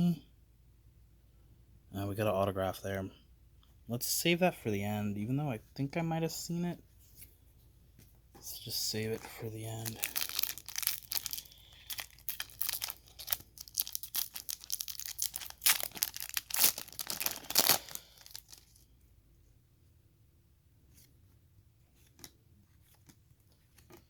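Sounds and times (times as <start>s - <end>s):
cards rustling: 8.5s - 18.8s
foil wrapper tearing and crinkling: 9.6s - 18.8s.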